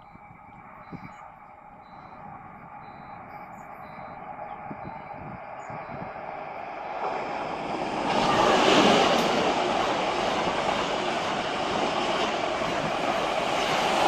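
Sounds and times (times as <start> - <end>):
train rail and wheel noise: 0.0 - 14.0.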